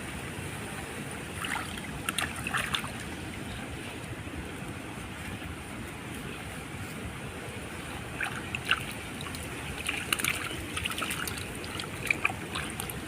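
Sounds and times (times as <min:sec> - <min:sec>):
water trickling and dripping: 0:07.8 - 0:13.0.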